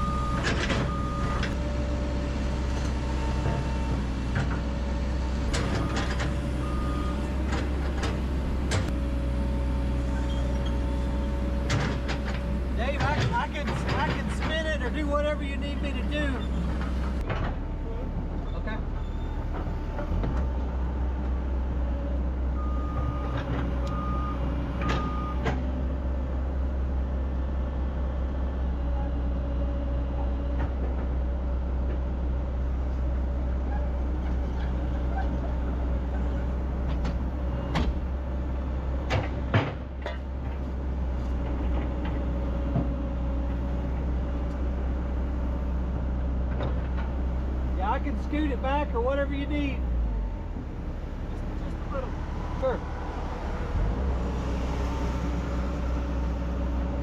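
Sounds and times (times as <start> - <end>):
diesel engine running: 0.0 - 57.0.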